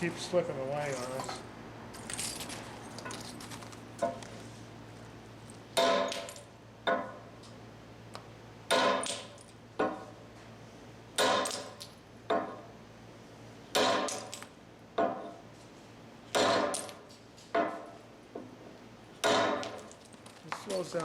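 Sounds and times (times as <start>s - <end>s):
hammer striking metal chisel: 13.8s - 14.3s, 19.2s - 19.8s.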